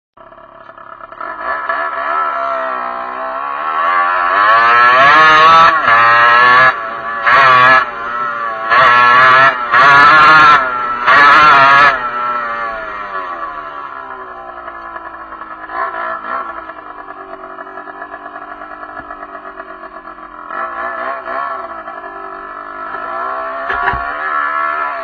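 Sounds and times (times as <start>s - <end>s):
motorcycle engine revving: 0.2s - 25.0s.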